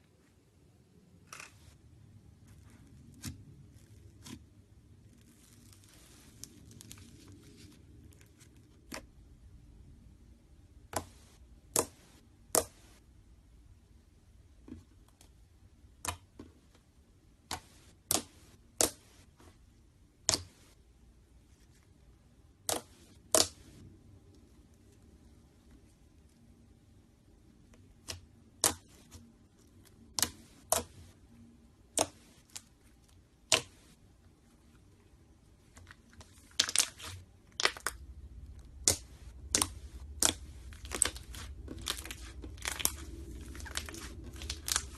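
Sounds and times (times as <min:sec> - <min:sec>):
slime popping: 0:36.5 - 0:44.9.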